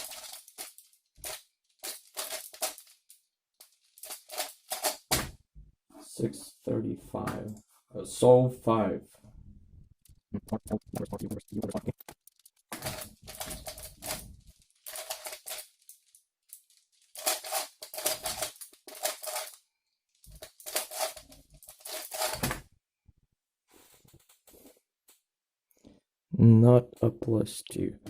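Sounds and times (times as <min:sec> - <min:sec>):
puzzle cube clicking and rattling: 0:00.0 - 0:05.1, 0:10.0 - 0:19.6, 0:20.2 - 0:22.4.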